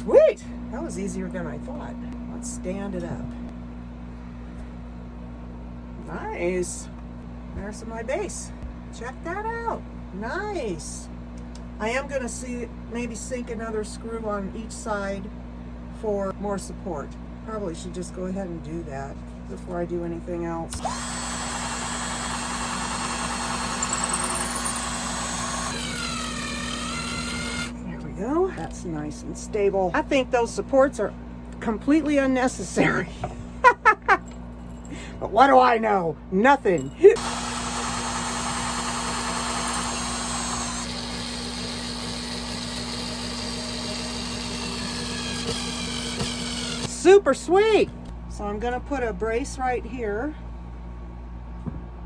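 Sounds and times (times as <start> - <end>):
electrical hum: 0.0 - 52.0
power drill driving screws: 20.7 - 27.8, 37.2 - 47.0.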